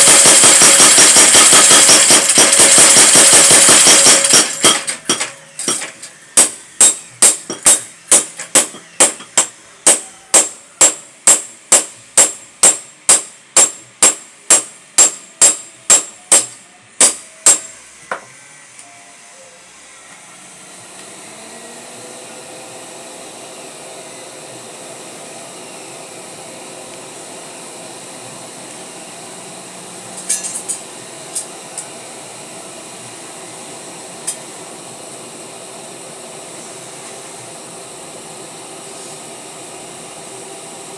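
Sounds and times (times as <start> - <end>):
power hammer striking metal: 0.0 - 18.3, 30.2 - 31.5.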